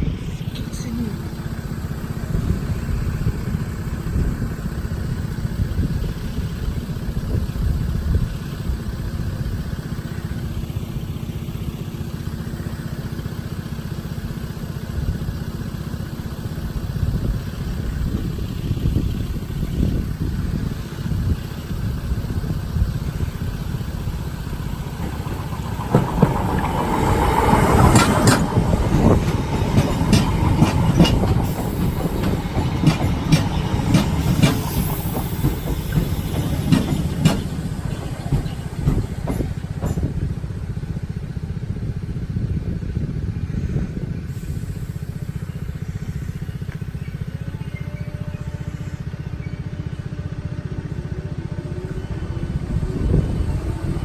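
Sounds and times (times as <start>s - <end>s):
train rumbling: 0.0s - 54.0s
wheel clicks over rail joints: 23.4s - 40.7s.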